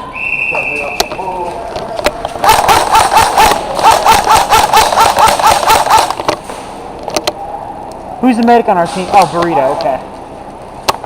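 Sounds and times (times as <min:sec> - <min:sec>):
airsoft gun rapid firing: 0:02.4 - 0:06.3.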